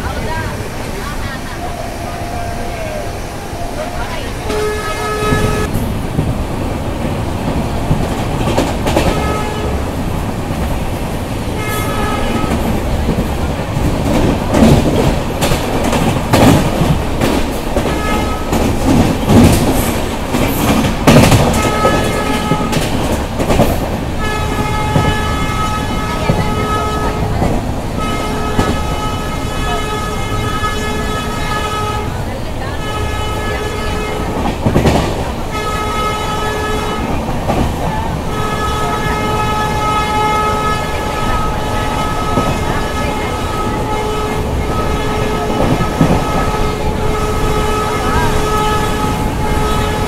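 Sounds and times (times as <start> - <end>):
train horn blasts: 1.7 - 5.8, 9.0 - 10.0, 11.5 - 12.9, 17.8 - 19.1, 20.7 - 23.2, 24.2 - 34.6, 35.4 - 37.3, 38.2 - 50.0
train wheels clattering on rails: 3.9 - 50.0.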